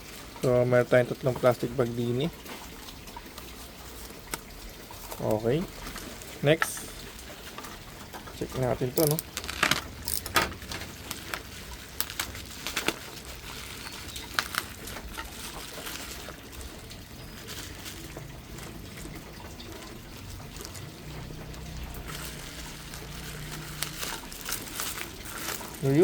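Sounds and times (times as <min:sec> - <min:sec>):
plastic packaging clicks and crinkles: 0:02.4 - 0:26.0
plastic packaging rustling: 0:02.4 - 0:26.0.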